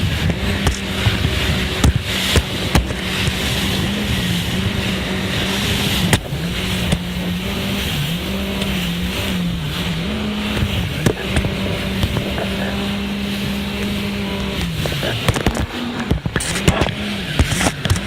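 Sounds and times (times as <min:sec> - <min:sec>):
jet ski engine running: 0:00.0 - 0:18.0
rush of water and wind: 0:00.0 - 0:18.0.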